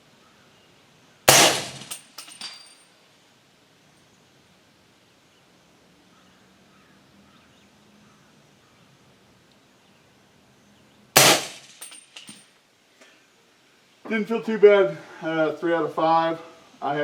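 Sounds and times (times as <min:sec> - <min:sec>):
suppressed rifle shot: 0:01.3 - 0:02.0, 0:11.2 - 0:11.8.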